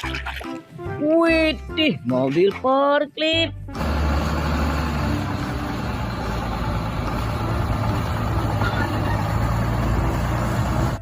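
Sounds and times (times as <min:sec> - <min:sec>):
vehicle engine idling: 0:03.7 - 0:11.0.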